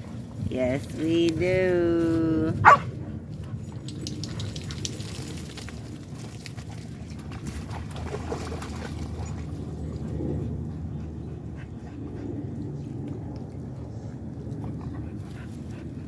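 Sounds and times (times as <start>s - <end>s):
steady low rumble: 9.0s - 16.0s.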